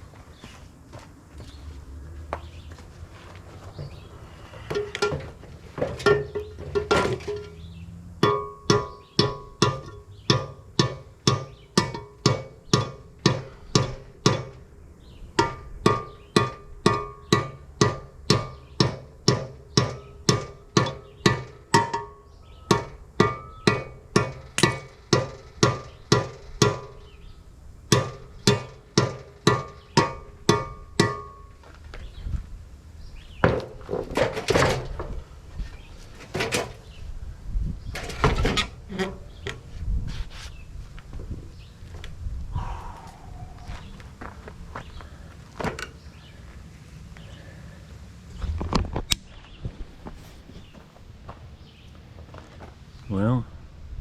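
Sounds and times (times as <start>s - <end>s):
hammer blows on metal: 15.4s - 27.2s.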